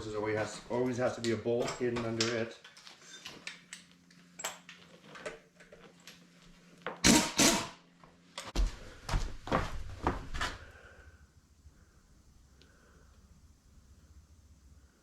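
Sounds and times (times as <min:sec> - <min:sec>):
short loud bursts: 0:07.0 - 0:07.8.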